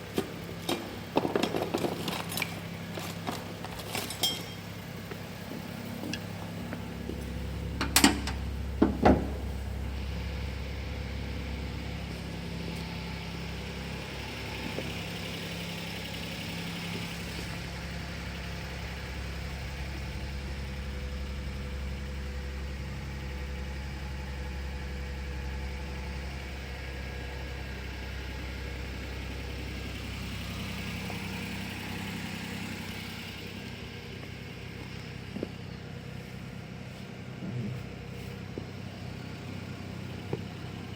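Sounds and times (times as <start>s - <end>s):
engine running steadily: 0.0s - 40.9s.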